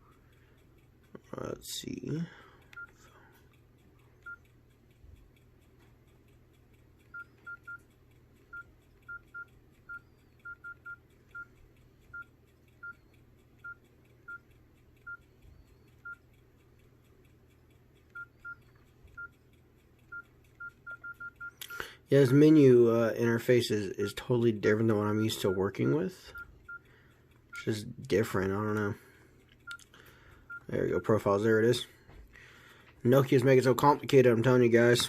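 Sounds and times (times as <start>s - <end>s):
phone keypad beeps: 2.7s - 3.0s, 4.2s - 4.5s, 7.1s - 7.9s, 8.5s - 11.5s, 12.1s - 13.0s, 13.6s - 15.3s, 16.0s - 16.2s, 18.1s - 18.6s, 19.2s - 19.4s, 20.1s - 22.6s, 25.2s - 26.9s, 29.6s - 29.8s, 30.5s - 30.8s.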